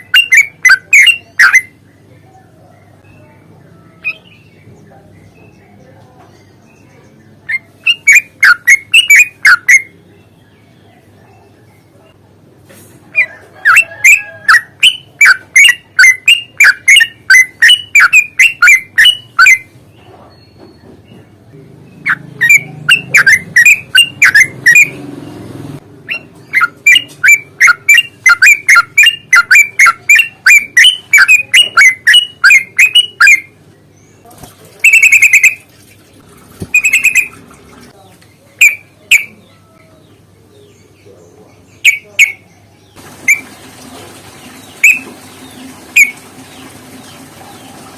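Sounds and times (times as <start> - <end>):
bulbul chirping song: 0.0 - 12.2, 13.1 - 35.7, 36.6 - 37.4, 38.3 - 43.5, 44.3 - 47.9
harsh bird calls: 0.0 - 12.2, 13.0 - 35.7, 36.6 - 47.9.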